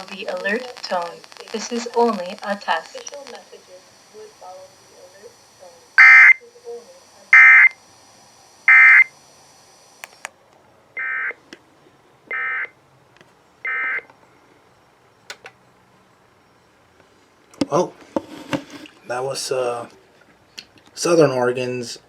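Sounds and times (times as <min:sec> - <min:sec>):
buzzy digital data bursts: 0:00.0 - 0:09.9.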